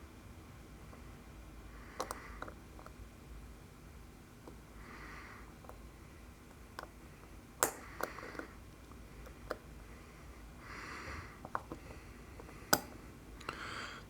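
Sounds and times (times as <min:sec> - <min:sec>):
soft nasal breathing: 0:04.7 - 0:06.1, 0:07.0 - 0:14.0.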